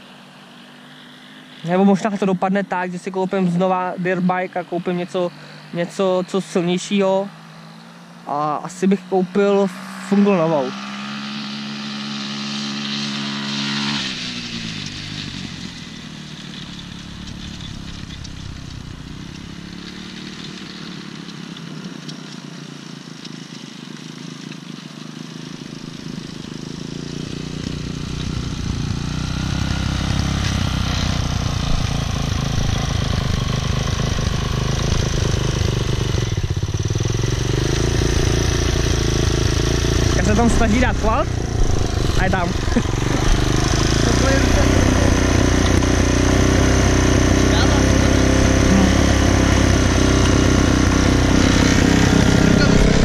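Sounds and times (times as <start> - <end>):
dirt bike engine passing: 0.0 - 53.0.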